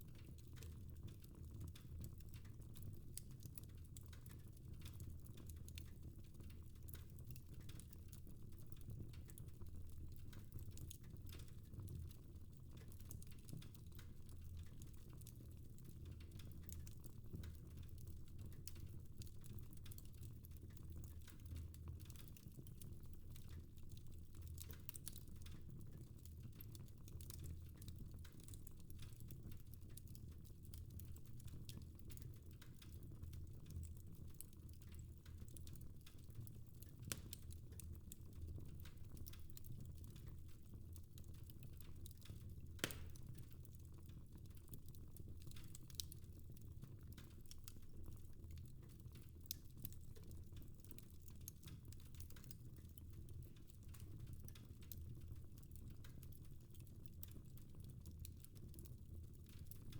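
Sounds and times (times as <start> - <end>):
fire crackling: 41.4 - 44.2.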